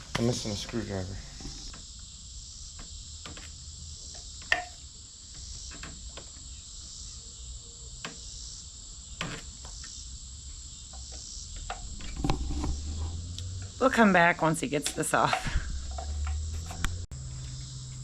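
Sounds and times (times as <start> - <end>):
insects chirring: 0.0 - 18.0.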